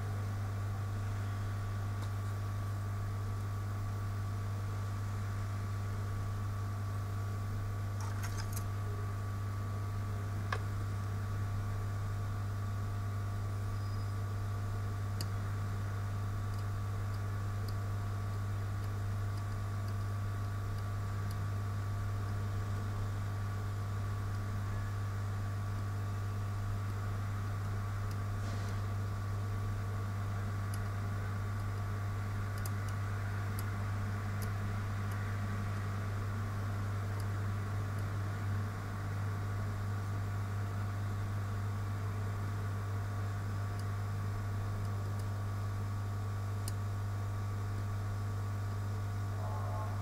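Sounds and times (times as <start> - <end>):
low electrical hum: 0.0 - 50.0
faint light ticks: 16.5 - 21.5, 32.5 - 33.7.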